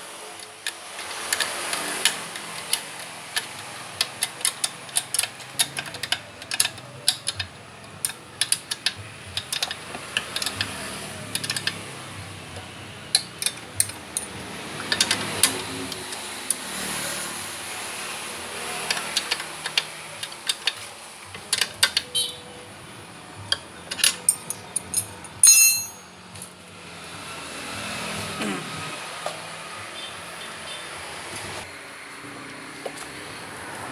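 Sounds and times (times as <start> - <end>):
tools clicking and knocking: 0.4 - 17.0, 18.6 - 22.4, 23.4 - 26.5
clatter of tools: 0.4 - 17.1, 18.6 - 22.2, 23.5 - 26.5.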